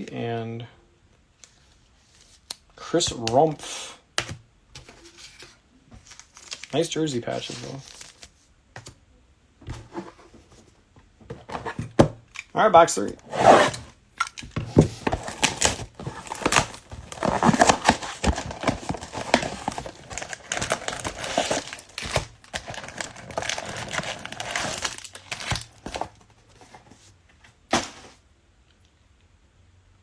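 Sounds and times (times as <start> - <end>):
plastic shrink wrap crackling: 15.2 - 26.2.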